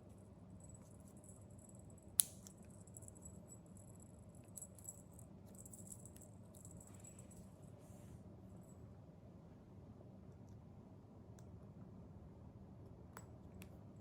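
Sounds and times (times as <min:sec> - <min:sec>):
faint jingling and rattling: 0:02.6 - 0:07.7.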